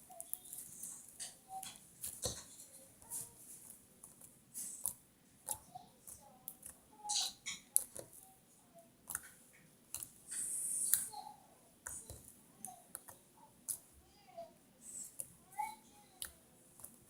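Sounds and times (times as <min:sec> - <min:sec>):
slime clicking and popping: 0:04.1 - 0:08.2, 0:09.0 - 0:11.1, 0:11.8 - 0:13.9, 0:16.2 - 0:17.0.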